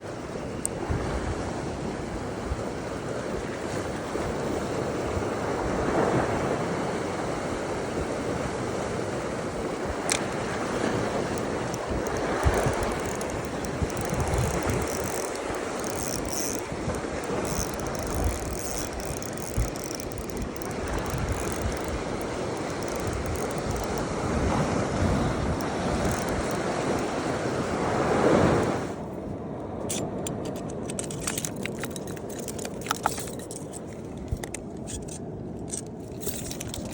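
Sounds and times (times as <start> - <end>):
sea surf: 0.0 - 36.9
wind buffeting microphone: 0.6 - 36.9.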